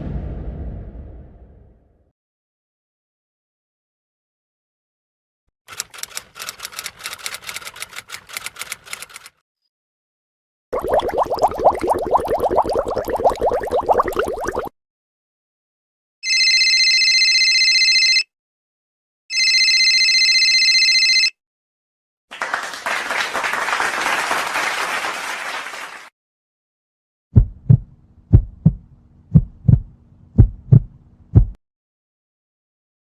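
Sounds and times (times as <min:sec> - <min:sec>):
electronic telephone ringing: 0:16.2 - 0:18.3, 0:19.3 - 0:21.4
applause: 0:22.3 - 0:26.1
heartbeat thumps: 0:27.4 - 0:31.6.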